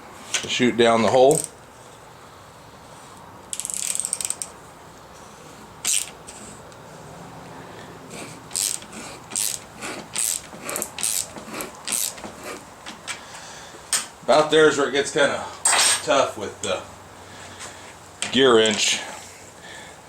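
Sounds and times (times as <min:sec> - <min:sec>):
ratcheting wrench clicking: 0:01.3 - 0:01.6, 0:03.5 - 0:04.6, 0:05.8 - 0:06.4, 0:08.2 - 0:13.2.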